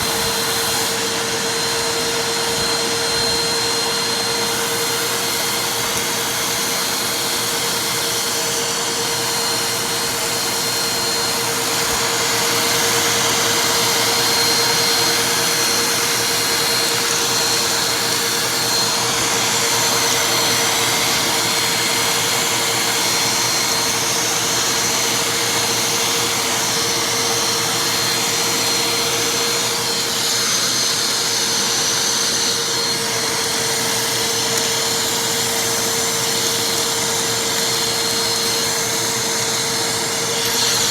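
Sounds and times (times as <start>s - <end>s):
vacuum cleaner running: 0.0s - 40.9s.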